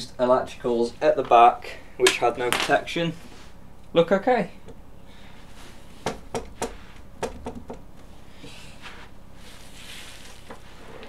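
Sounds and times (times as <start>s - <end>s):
rustling: 8.0s - 11.0s.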